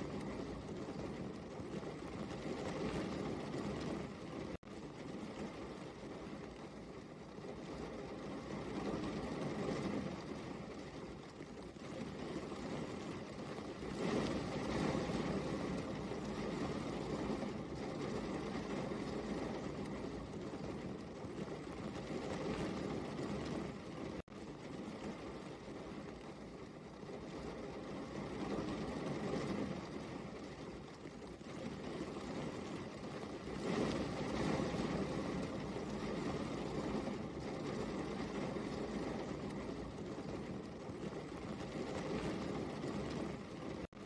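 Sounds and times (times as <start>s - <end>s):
steady rain hiss: 0.0s - 43.9s.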